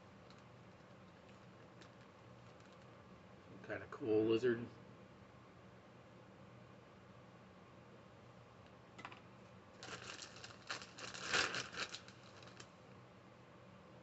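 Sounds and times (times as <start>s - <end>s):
plastic bag crinkling: 0.3s - 2.9s, 9.8s - 12.7s.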